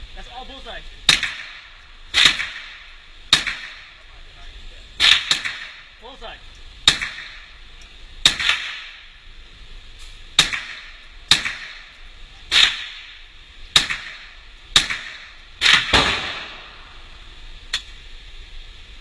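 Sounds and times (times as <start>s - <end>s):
rifle shots: 1.1s - 3.9s, 5.0s - 5.9s, 6.8s - 7.5s, 8.2s - 9.0s, 10.4s - 11.9s, 12.5s - 16.9s.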